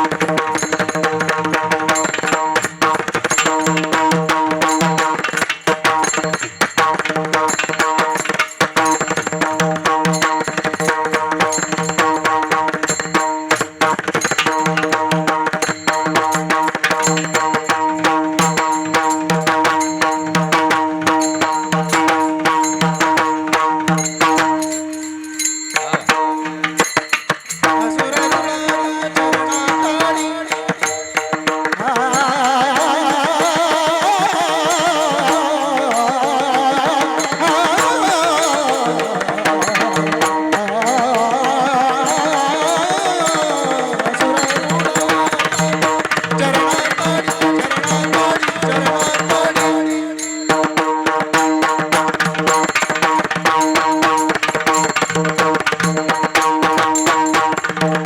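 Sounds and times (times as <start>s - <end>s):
fast hand drumming: 0.0s - 25.0s, 25.7s - 58.0s
person singing ornamented melody: 27.6s - 51.3s.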